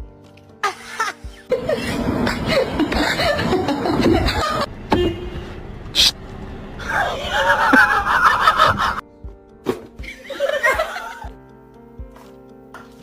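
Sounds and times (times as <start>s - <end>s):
background music: 0.0s - 4.7s, 7.2s - 13.0s
people laughing: 0.6s - 4.7s, 6.8s - 9.0s, 10.0s - 11.3s.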